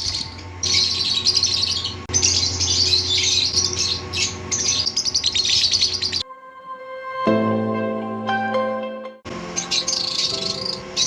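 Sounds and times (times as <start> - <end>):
lovebirds chirping: 0.0 - 6.2, 9.4 - 11.0.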